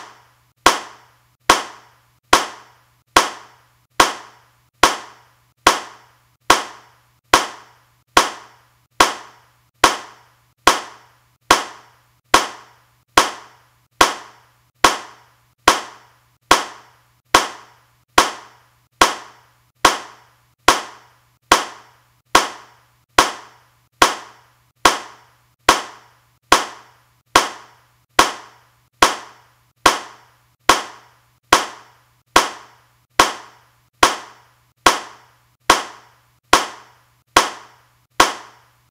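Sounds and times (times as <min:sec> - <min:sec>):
hand claps: 0:00.0 - 0:21.8.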